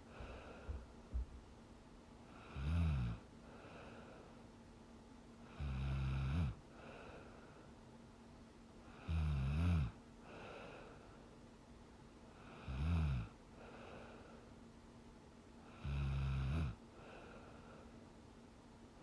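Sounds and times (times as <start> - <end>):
soft noisy breaths: 0.0 - 19.0
woman snoring: 2.3 - 3.2, 5.5 - 6.6, 8.9 - 10.0, 12.4 - 13.4, 15.7 - 16.8.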